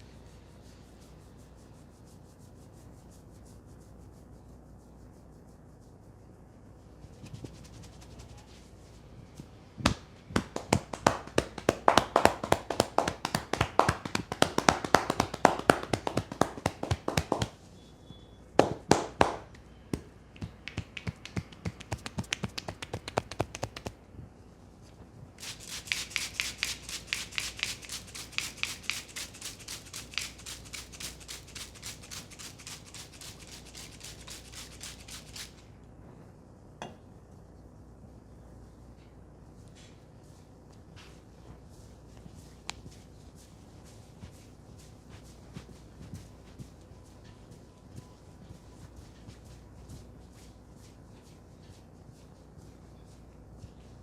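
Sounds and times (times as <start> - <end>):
hands tapping and slapping head: 9.8 - 17.6, 18.6 - 24.0, 25.4 - 35.5.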